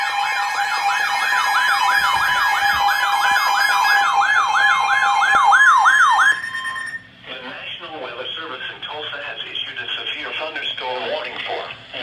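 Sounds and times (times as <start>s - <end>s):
siren-like warble: 0.0s - 7.2s
paired beeping tones: 5.8s - 7.1s.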